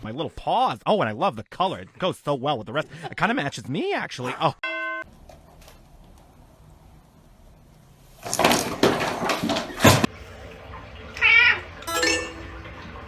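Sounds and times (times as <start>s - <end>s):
cat crying and meowing: 11.2s - 11.7s.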